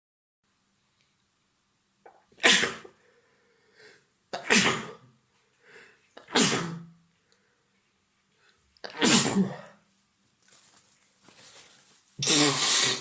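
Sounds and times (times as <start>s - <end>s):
man sneezing: 2.4s - 2.9s, 4.4s - 5.0s, 6.2s - 6.9s, 8.9s - 9.8s, 12.2s - 13.0s.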